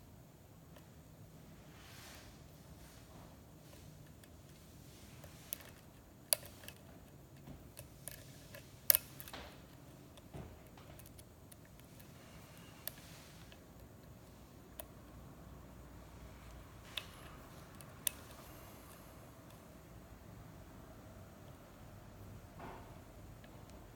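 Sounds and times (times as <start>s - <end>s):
lock picks clicking in lock: 5.2s - 15.0s, 16.8s - 19.6s.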